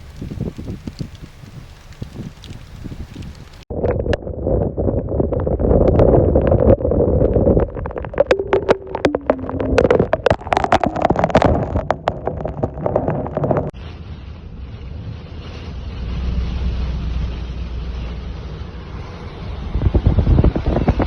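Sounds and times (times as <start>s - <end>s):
wind buffeting microphone: 0.0s - 13.7s, 19.6s - 21.0s.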